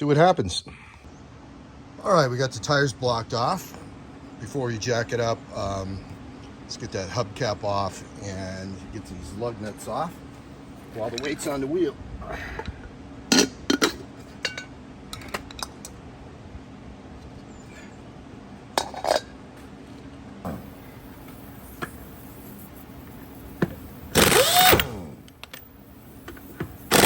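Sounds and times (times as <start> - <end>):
hand tools clinking on metal: 11.0 - 11.6
power tool spinning up and down: 20.5 - 27.0.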